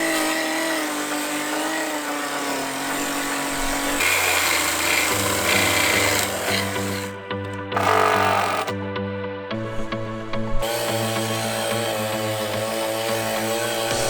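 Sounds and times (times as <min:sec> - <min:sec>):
chainsaw running: 0:00.0 - 0:08.9, 0:10.6 - 0:14.0
background music: 0:00.0 - 0:14.0.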